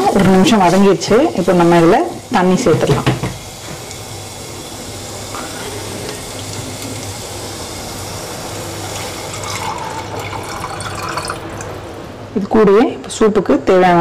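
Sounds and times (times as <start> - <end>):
water pouring into hot pot: 1.2 - 12.2.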